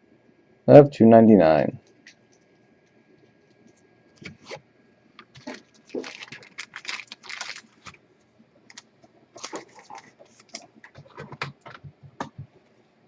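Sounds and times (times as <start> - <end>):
cards clicking and rustling: 8.7 - 12.4.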